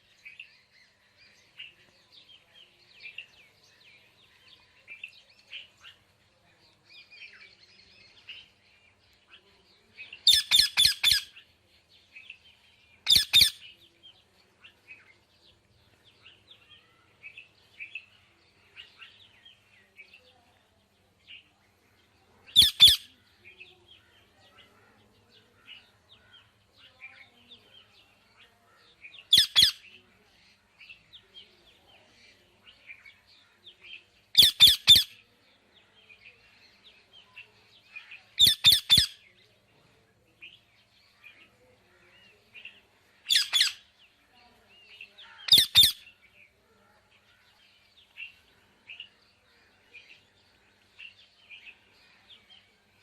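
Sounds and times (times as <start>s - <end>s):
parrots chirping and twittering: 10.2s - 11.5s, 13.0s - 13.7s, 22.5s - 23.1s, 29.2s - 29.9s, 34.3s - 35.2s, 38.0s - 39.2s, 43.1s - 44.0s, 45.2s - 46.2s
parrot squawks: 10.3s - 11.3s, 22.6s - 23.1s, 34.4s - 35.1s, 43.3s - 43.8s, 45.5s - 46.0s.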